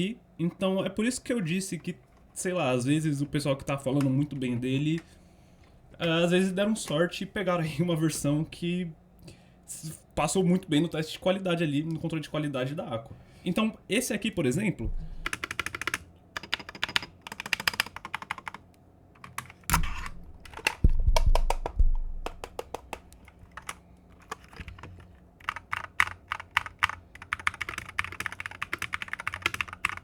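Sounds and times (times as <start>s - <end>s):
deep keyboard thumps: 14.8s - 15.3s, 19.7s - 23.1s
keyboard typing: 15.2s - 18.6s, 19.2s - 30.0s.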